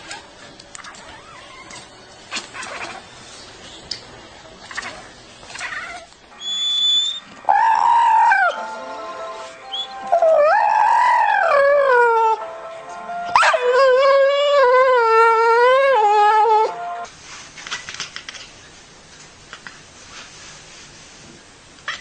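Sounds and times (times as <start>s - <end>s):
animal howling: 5.6s - 8.6s, 9.7s - 12.4s, 13.3s - 16.8s.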